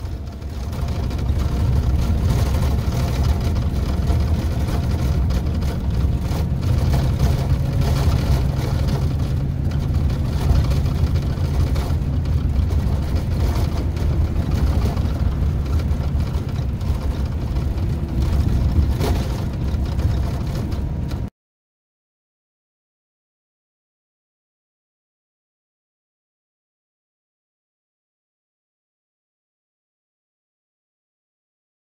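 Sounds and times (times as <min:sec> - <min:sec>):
diesel engine humming: 0:00.0 - 0:21.3.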